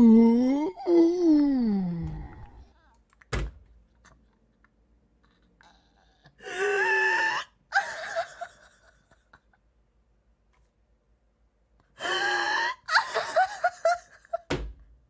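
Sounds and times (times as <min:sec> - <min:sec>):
person crying out in pain: 0:00.0 - 0:02.5, 0:06.4 - 0:08.1.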